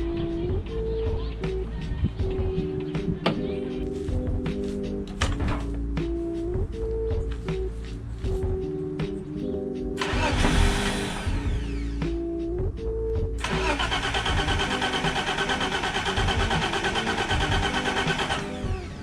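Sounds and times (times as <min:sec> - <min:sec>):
background music: 0:00.0 - 0:19.0
car engine cranking: 0:10.0 - 0:12.0, 0:13.4 - 0:19.0.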